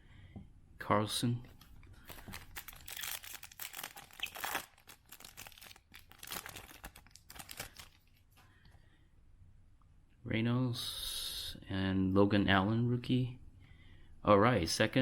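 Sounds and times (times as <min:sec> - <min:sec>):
trading cards being handled: 0:01.5 - 0:08.2
foil wrapper crinkling: 0:02.0 - 0:08.2.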